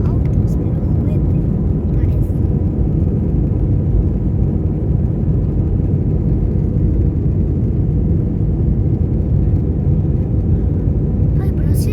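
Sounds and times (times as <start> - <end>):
airplane engine drone: 0.0 - 11.9
faint constant whine: 0.0 - 11.9.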